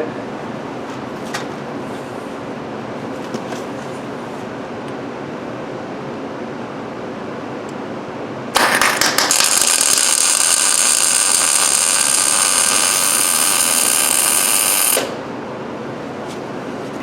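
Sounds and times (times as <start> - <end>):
welding arc buzzing: 8.6 - 15.3.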